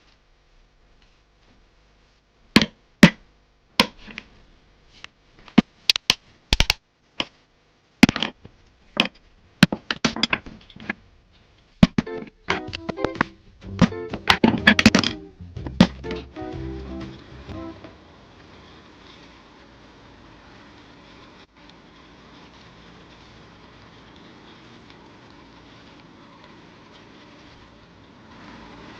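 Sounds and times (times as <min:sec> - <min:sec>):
plucked guitar music: 0:12.0 - 0:18.0.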